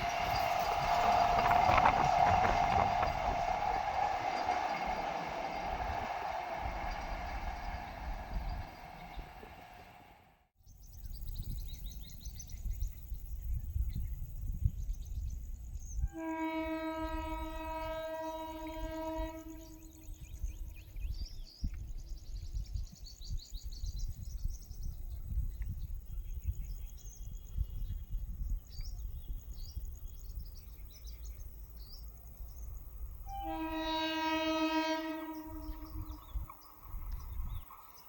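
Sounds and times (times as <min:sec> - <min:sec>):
low rumble: 0:00.0 - 0:10.3
train horn blast: 0:00.0 - 0:10.3, 0:16.0 - 0:20.5, 0:33.2 - 0:36.5.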